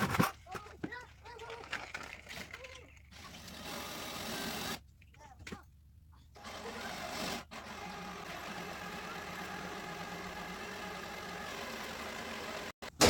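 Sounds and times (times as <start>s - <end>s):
electric drill boring metal: 3.2s - 4.8s, 6.4s - 12.8s.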